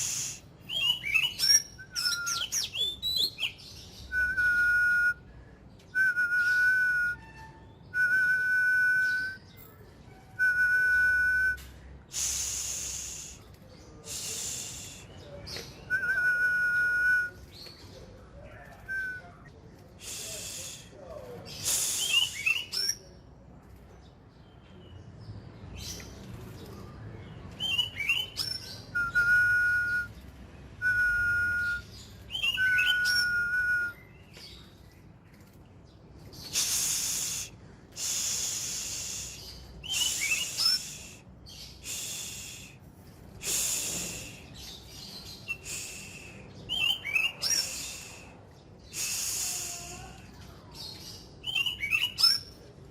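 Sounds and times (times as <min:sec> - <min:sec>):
bird singing and chirping: 0:00.0 - 0:11.9, 0:12.5 - 0:52.9
clear bird whistles: 0:00.0 - 0:18.0, 0:18.7 - 0:23.2, 0:26.7 - 0:35.5, 0:36.3 - 0:50.2, 0:50.8 - 0:52.7
harsh rasping bird calls: 0:17.5 - 0:23.2, 0:31.5 - 0:52.9.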